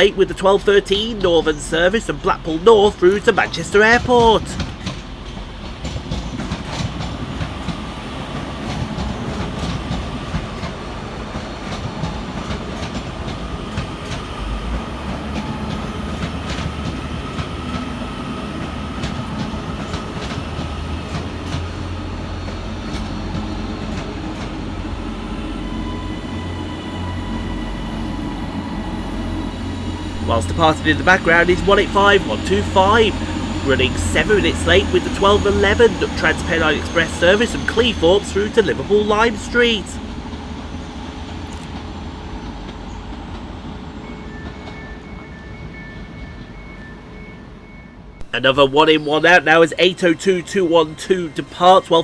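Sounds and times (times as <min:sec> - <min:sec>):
faint traction whine: 0:00.0 - 0:04.7, 0:20.6 - 0:40.2, 0:48.0 - 0:52.0
wheels clicking over rail joints: 0:00.0 - 0:40.2
train rolling rumble: 0:00.0 - 0:52.0
deep steady drone: 0:24.7 - 0:40.2.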